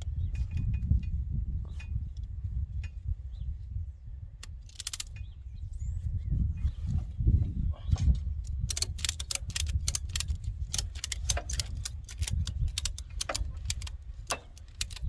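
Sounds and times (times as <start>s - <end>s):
rapid metallic clicking: 8.5s - 15.0s.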